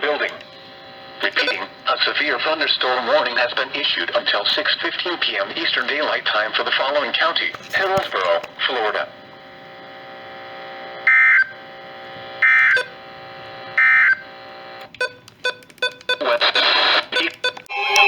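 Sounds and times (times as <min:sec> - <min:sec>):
radio hiss: 0:00.0 - 0:14.9, 0:16.2 - 0:17.4
crackling clicks: 0:00.0 - 0:18.0.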